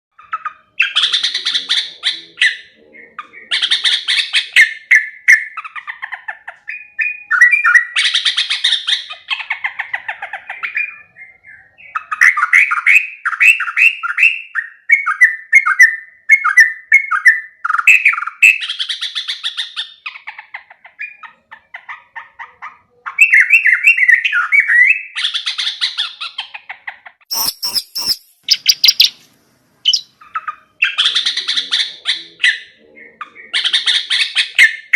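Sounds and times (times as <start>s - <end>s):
bird chattering song: 0.1s - 34.9s
bird scratchy bursts: 27.3s - 30.1s.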